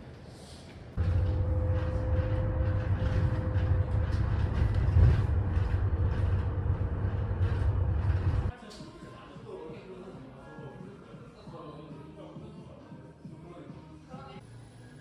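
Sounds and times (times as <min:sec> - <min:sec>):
moving vehicle rumble: 0:01.0 - 0:08.5.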